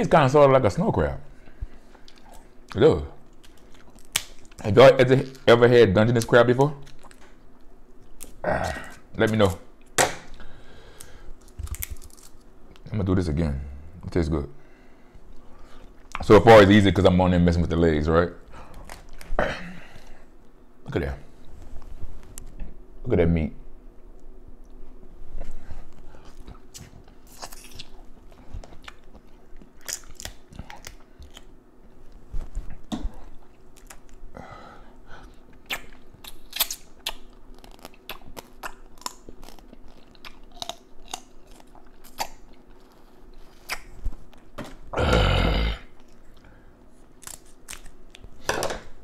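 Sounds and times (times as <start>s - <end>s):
crab shell cracking and crunching: 3.3s - 4.7s, 11.0s - 12.5s, 26.7s - 28.1s, 28.7s - 31.6s, 35.6s - 42.9s, 47.1s - 48.3s
wet chewing and smacking: 25.4s - 34.2s, 35.2s - 44.5s.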